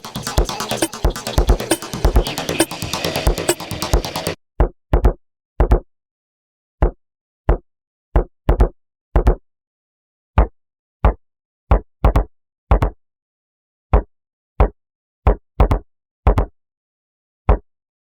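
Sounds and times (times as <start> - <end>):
electronic drum hit: 0.0 - 4.4.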